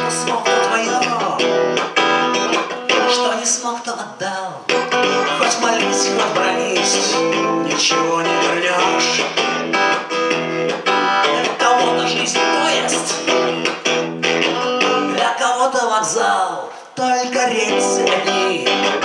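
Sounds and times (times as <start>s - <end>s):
guitar strumming: 0.0s - 3.6s, 4.7s - 15.3s, 17.6s - 19.0s.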